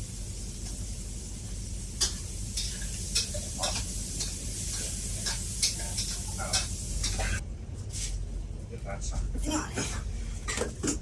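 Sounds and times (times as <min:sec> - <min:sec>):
food sizzling in a wok: 0:00.0 - 0:07.4.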